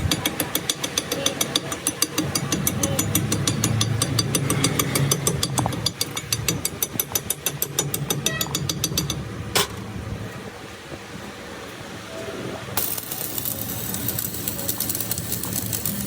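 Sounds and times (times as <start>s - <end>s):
rapid even ticking: 12.8s - 16.0s.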